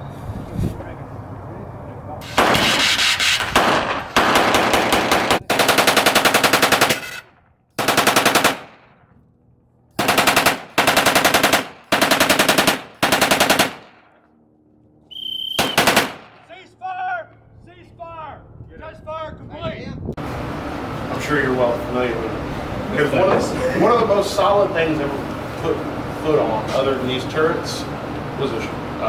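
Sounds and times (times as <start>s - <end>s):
machine gun bursts: 2.2s - 8.8s, 10.0s - 14.0s, 15.6s - 16.5s.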